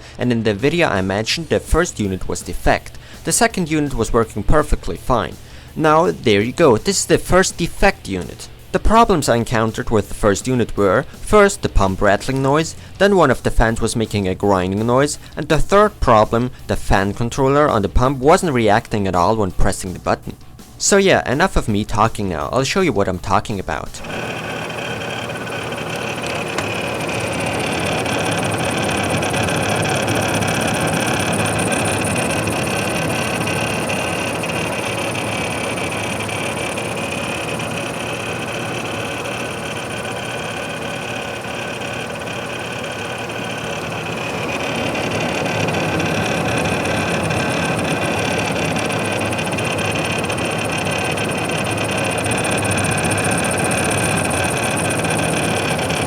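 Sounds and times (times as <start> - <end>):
fan grinding: 0.0 - 56.0
thin high whine: 23.9 - 56.0
cooler pump rattling: 24.0 - 56.0.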